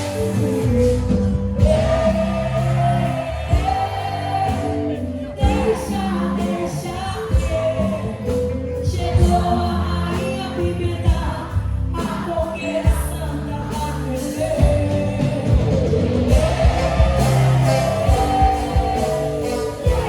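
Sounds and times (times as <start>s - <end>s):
song with singing bass and drums: 0.0s - 20.0s.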